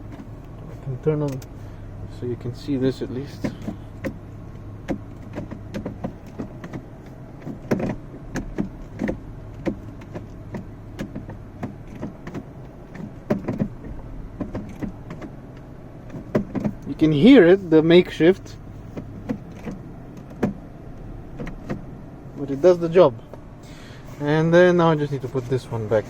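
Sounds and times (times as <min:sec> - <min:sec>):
gear shifter clicks and knocks: 0:00.0 - 0:26.0
steady low hum: 0:00.0 - 0:26.0.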